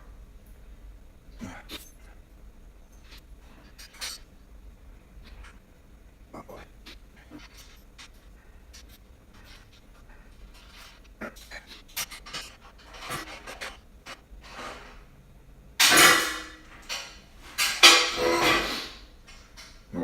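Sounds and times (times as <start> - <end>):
heavy breathing: 5.1 - 14.7.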